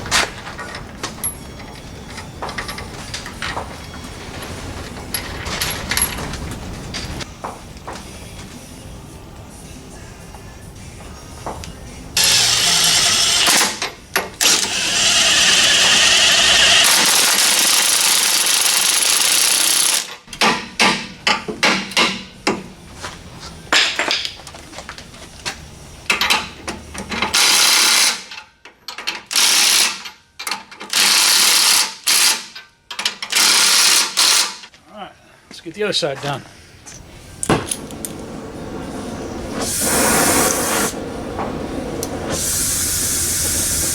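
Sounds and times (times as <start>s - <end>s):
power wrench running nuts: 12.2s - 13.8s, 14.4s - 20.2s, 27.3s - 28.3s, 29.3s - 30.0s, 30.9s - 32.5s, 33.3s - 34.7s.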